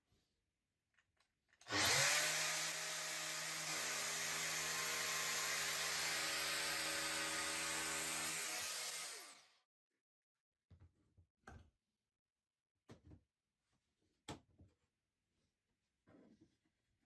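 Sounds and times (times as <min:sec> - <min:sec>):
power tool whining: 0:01.7 - 0:09.4
power tool spinning down: 0:01.7 - 0:09.5.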